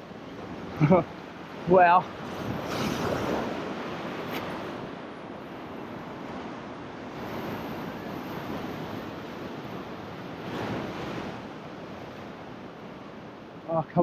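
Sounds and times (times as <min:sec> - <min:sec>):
surf washing against rocks: 0:00.0 - 0:14.0
wind on microphone: 0:02.1 - 0:13.3.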